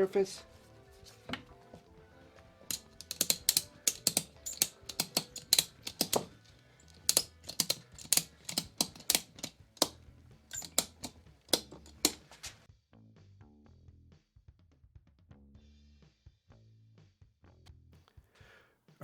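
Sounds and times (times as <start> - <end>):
ratchet strap clicking: 2.6 - 12.6.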